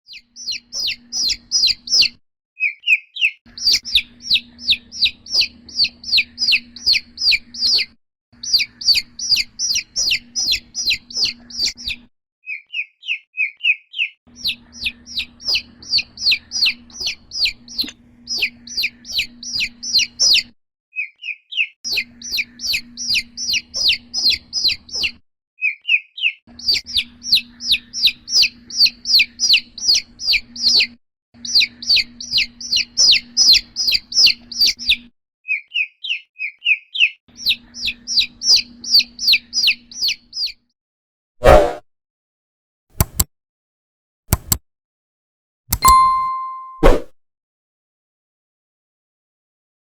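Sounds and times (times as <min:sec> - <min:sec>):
chick peeping: 0:00.1 - 0:40.6
faint low hum: 0:03.5 - 0:07.8, 0:14.4 - 0:20.4.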